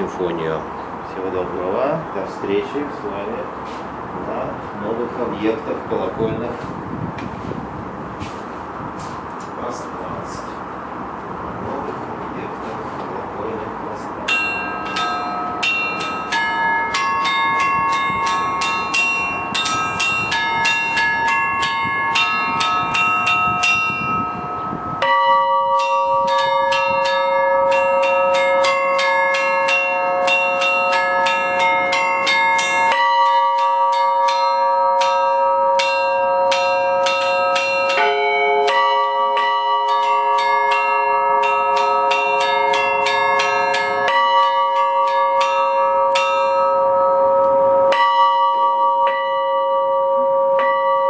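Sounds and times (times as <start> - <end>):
small church bells pealing: 4.2 - 6.6, 12.3 - 51.0
deep bell strokes: 14.2 - 51.0.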